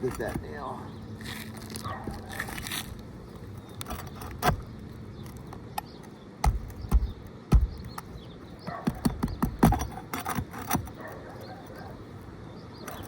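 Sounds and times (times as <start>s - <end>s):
shingles tearing: 0.0s - 0.6s, 1.2s - 8.2s, 9.0s - 11.2s
heavy thumps: 6.4s - 8.1s.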